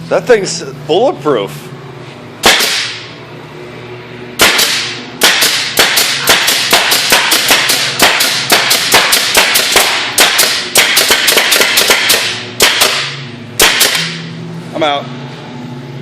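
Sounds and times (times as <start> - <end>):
nail gun firing: 2.4 - 3.0, 4.4 - 14.3.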